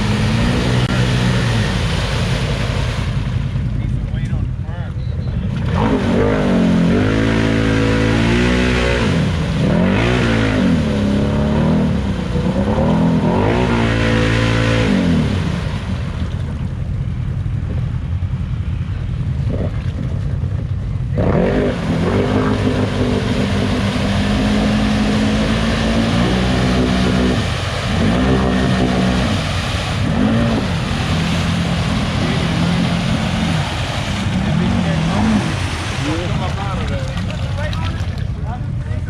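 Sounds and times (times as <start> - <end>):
atv engine revving: 0.0 - 3.7, 5.4 - 16.8, 21.0 - 38.0.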